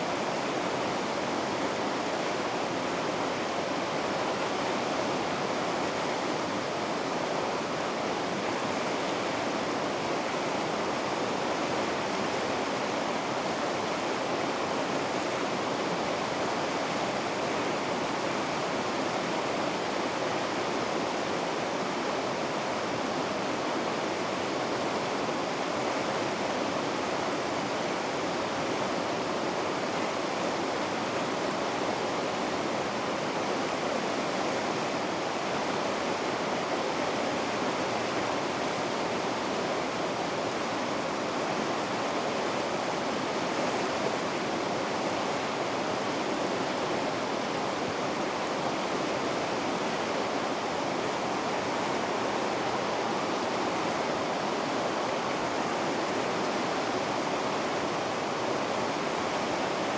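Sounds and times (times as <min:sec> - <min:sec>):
water rushing over rapids: 0:00.0 - 0:59.9.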